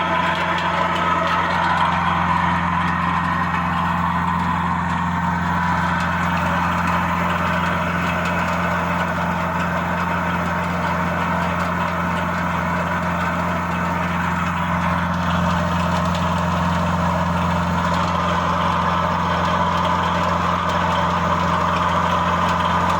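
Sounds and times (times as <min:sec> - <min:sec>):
air blower humming: 0:00.0 - 0:13.0.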